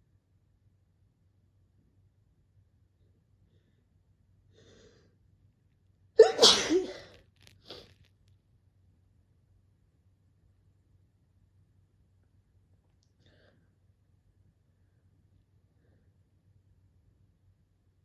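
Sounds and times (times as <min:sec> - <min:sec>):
person sneezing loudly: 0:06.2 - 0:07.2.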